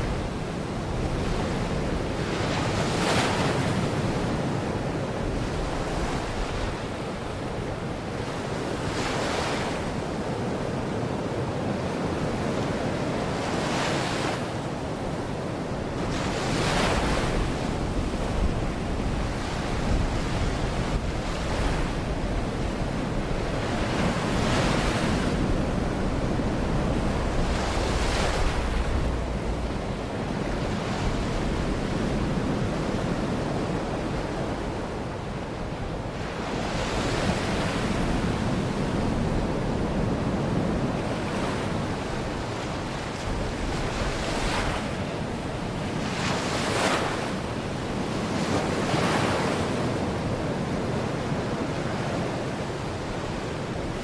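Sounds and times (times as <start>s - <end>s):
wind rumbling on microphone: 0.0s - 54.0s
small waves breaking on shore: 11.8s - 35.1s.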